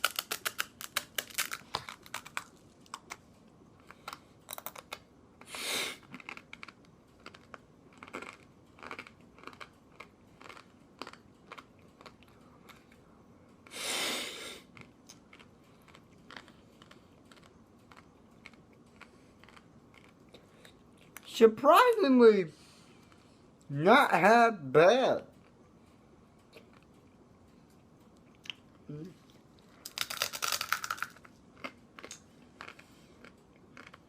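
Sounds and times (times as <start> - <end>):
crunching dry noodles: 0.0 - 13.0, 14.6 - 21.3, 29.3 - 34.0.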